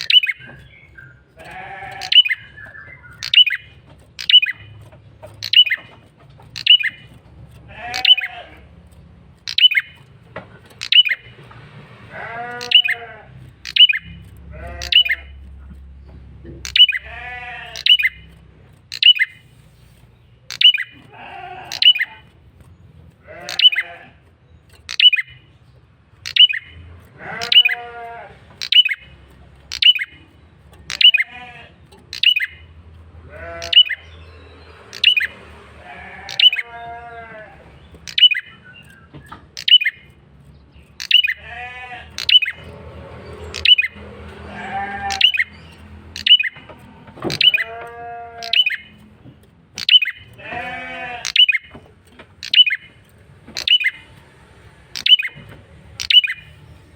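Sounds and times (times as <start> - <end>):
bird sharp high calls: 0.0 - 8.6, 9.4 - 10.0, 10.6 - 11.3, 12.2 - 15.4, 16.6 - 19.6, 20.4 - 22.3, 23.2 - 24.1, 24.8 - 25.5, 26.2 - 30.3, 30.9 - 32.7, 33.4 - 40.2, 40.8 - 42.7, 43.4 - 49.0, 49.8 - 51.8, 52.4 - 53.0, 53.6 - 54.2, 54.9 - 56.7
bird nasal buzzy calls: 0.0 - 10.1, 10.7 - 11.3, 12.1 - 15.5, 16.6 - 22.5, 23.1 - 25.5, 26.2 - 34.2, 34.8 - 38.9, 40.9 - 42.7, 43.3 - 46.6, 47.2 - 49.0, 49.7 - 51.7, 52.3 - 54.1, 54.9 - 56.6.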